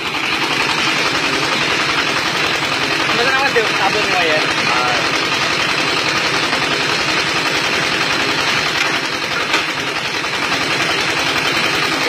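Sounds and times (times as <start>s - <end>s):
brick-making machine clattering: 0.0s - 12.0s.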